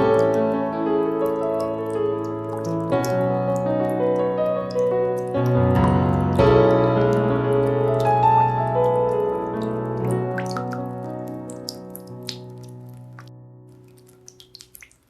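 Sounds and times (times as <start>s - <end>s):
icicles dripping: 0.0s - 15.0s
slow soft piano music: 0.0s - 15.0s.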